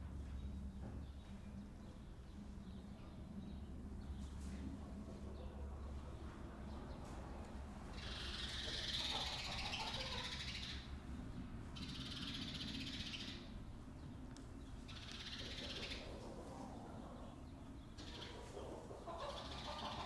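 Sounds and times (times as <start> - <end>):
chickens calling raspily: 5.0 - 11.1, 14.9 - 20.0.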